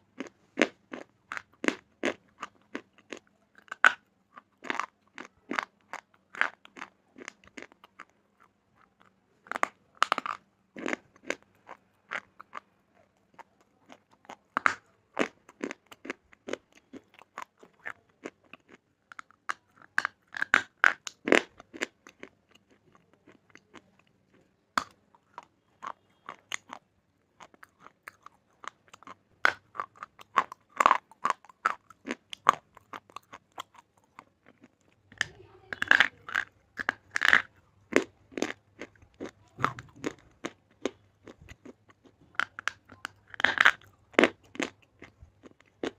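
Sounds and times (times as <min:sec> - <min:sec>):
crisp chewing crunches: 0:00.0 - 0:45.9.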